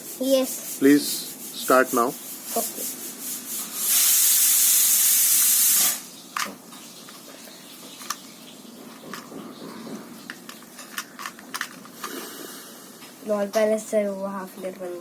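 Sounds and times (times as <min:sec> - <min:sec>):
loud steady hiss: 0:00.0 - 0:06.4, 0:11.8 - 0:13.5.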